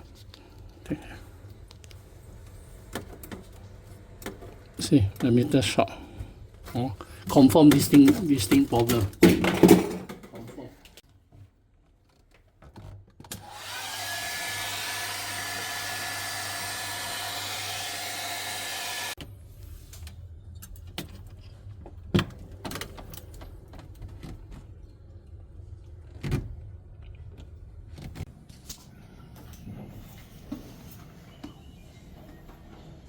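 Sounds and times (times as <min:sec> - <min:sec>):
electric blower whining: 0:13.4 - 0:19.2.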